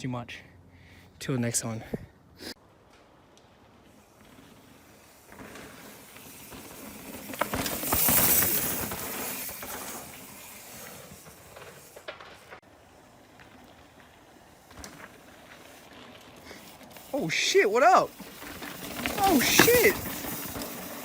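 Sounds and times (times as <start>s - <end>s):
bike tyres on gravel: 2.6s - 21.0s
bike rattles and clicks: 2.8s - 21.0s.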